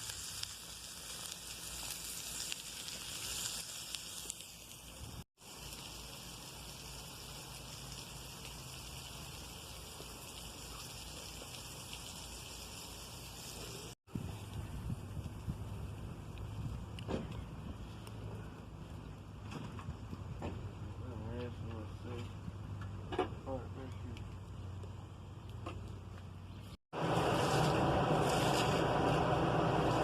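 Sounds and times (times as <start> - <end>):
food sizzling in a frying pan: 0.0 - 14.0.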